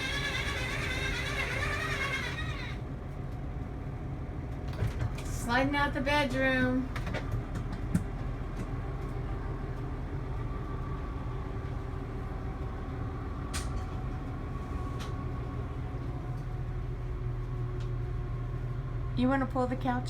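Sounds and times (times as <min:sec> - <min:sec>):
low mechanical hum: 0:00.0 - 0:20.0.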